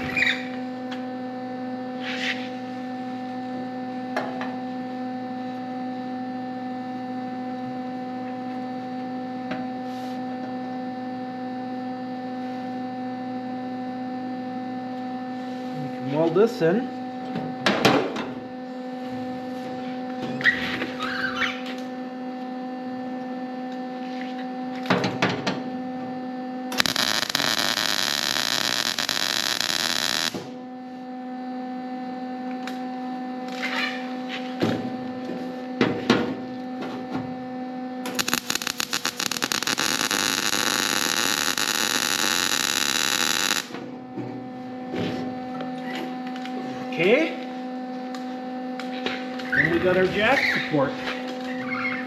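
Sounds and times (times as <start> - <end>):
steady electrical hum: 0.0 - 4.1, 26.2 - 36.8, 37.4 - 52.0
welding arc crackling: 26.7 - 30.6, 38.0 - 43.8.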